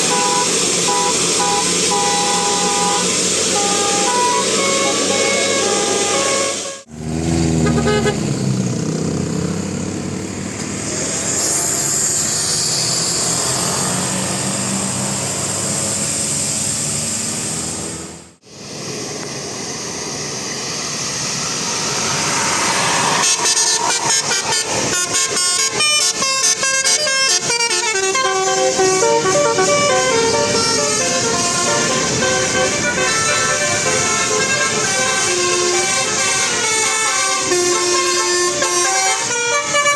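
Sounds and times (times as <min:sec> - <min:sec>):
multi-tone air horn melodies: 0:00.0 - 0:06.9, 0:07.6 - 0:08.3, 0:22.8 - 0:39.9
bus engine: 0:00.0 - 0:39.9
road noise: 0:00.0 - 0:39.9.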